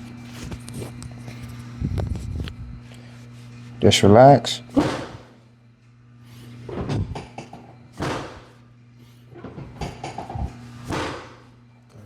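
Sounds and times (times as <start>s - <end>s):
drop table sections thudding: 4.8s - 5.3s, 8.0s - 8.6s, 10.9s - 11.4s.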